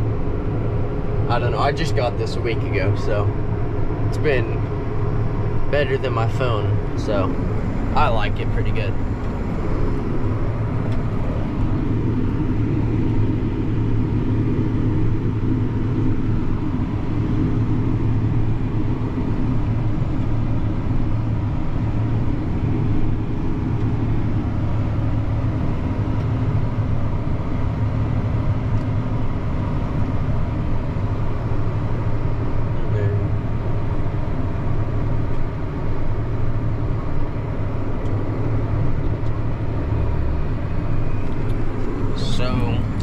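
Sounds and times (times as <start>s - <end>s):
diesel engine droning: 0.0s - 43.0s.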